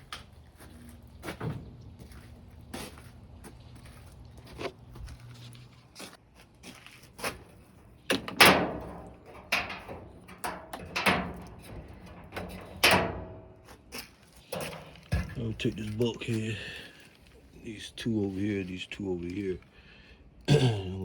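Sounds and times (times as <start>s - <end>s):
sheet-metal panels clanking: 8.1s - 13.6s.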